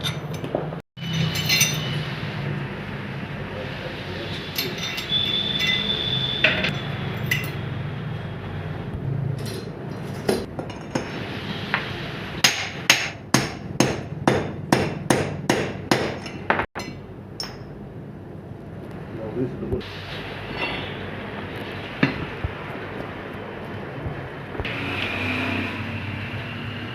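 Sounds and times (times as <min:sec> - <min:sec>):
hammer striking metal: 0:00.0 - 0:02.0, 0:04.4 - 0:07.6, 0:12.4 - 0:17.8.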